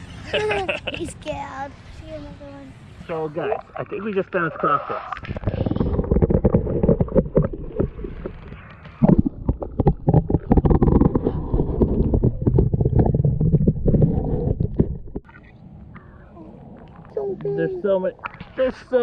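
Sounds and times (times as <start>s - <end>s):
water sloshing and gurgling: 3.0s - 19.0s.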